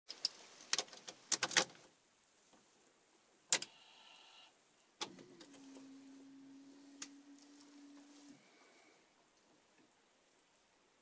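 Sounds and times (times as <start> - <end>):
steady low hum: 3.7 - 9.7.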